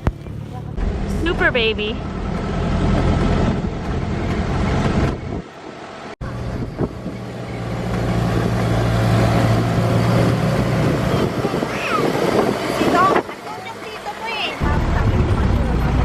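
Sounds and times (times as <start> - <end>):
vehicle engine running: 0.0 - 16.0.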